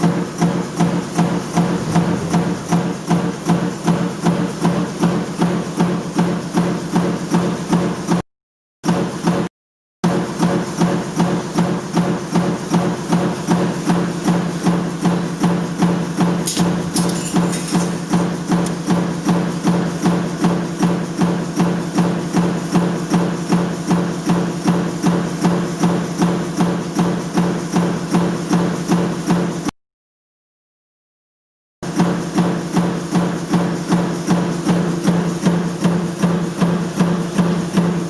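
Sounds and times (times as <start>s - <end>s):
motor hum: 1.0s - 3.8s.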